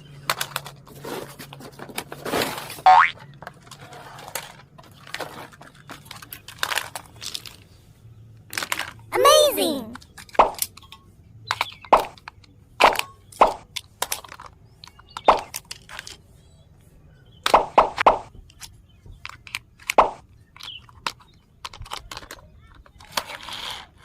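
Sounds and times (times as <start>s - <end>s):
hands handling toy and packaging: 0.1s - 11.0s, 13.7s - 16.4s, 20.5s - 23.7s.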